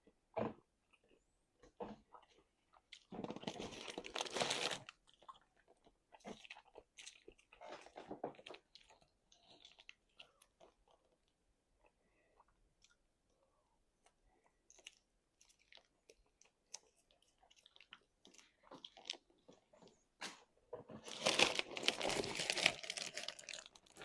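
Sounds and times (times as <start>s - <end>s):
person crunching food: 2.1s - 11.3s, 14.4s - 19.5s, 21.0s - 24.0s.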